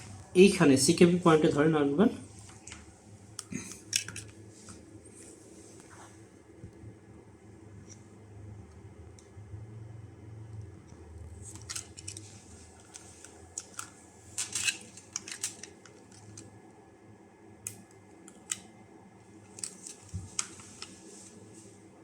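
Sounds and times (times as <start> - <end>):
small tools clicking and tapping: 11.5 - 16.5.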